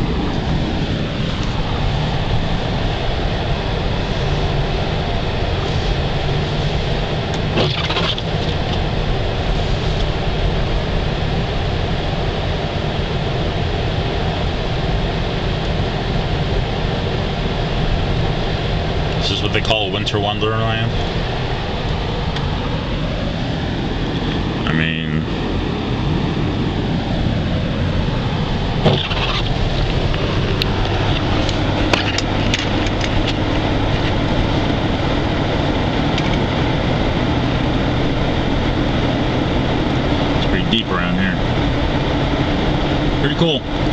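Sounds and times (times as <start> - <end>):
tyres ploughing through snow: 0.0 - 12.2, 25.4 - 43.9
engine rumble from inside cabin: 0.0 - 43.9.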